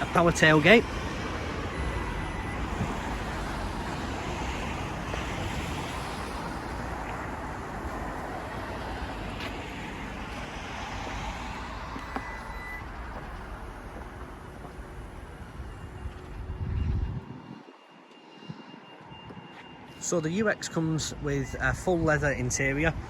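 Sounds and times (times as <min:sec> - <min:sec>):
road traffic hiss: 0:00.0 - 0:16.6.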